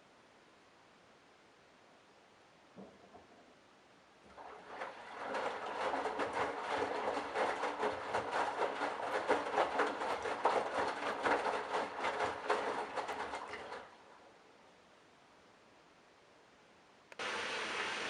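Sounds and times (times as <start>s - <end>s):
washing machine laundry sloshing: 4.3s - 14.1s
faint motor hum: 17.1s - 18.0s.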